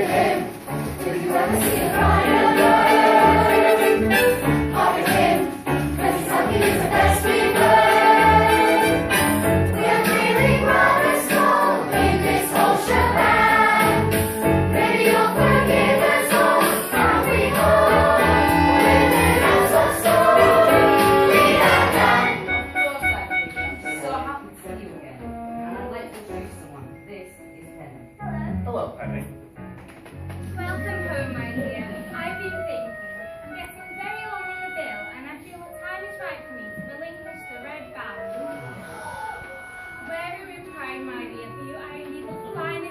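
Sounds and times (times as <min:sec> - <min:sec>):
group of voices singing: 0:00.0 - 0:22.6
instrumental backing: 0:00.0 - 0:42.9.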